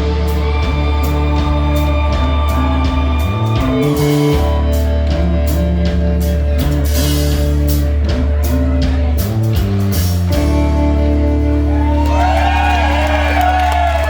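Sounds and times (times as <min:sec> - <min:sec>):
rock music: 0:00.0 - 0:14.0.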